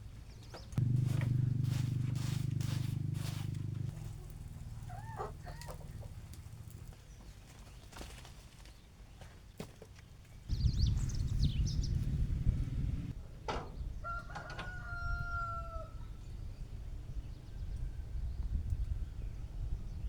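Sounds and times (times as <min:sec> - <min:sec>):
bird calls: 0:00.3 - 0:07.8, 0:10.5 - 0:13.1
low steady hum: 0:00.8 - 0:07.0, 0:10.5 - 0:13.1.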